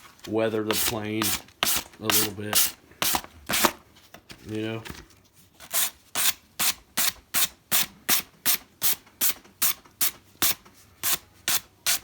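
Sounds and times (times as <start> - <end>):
hand sanding foam: 0.6 - 3.6.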